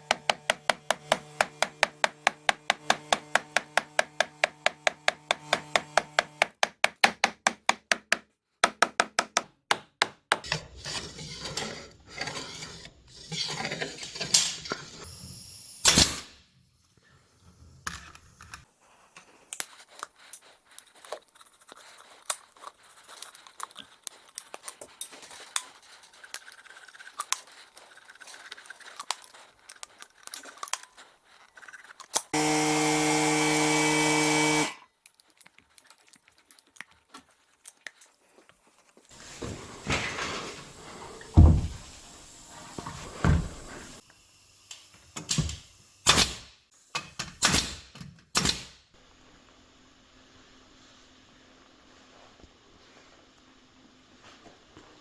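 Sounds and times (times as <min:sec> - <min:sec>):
power tool running: 0:00.0 - 0:06.6, 0:32.4 - 0:34.8
knocks and handling noise: 0:39.1 - 0:42.0.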